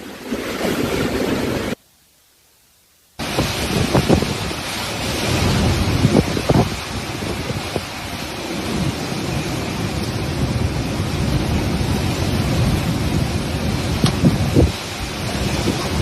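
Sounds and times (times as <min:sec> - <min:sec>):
strong wind buffeting microphone: 0:03.2 - 0:16.0.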